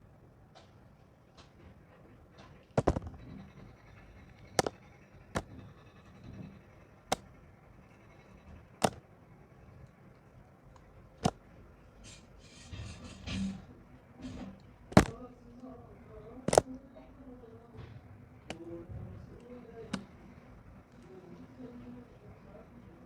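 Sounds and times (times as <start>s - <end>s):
knife cutting soap clicks: 4.5s - 5.5s, 8.8s - 9.0s.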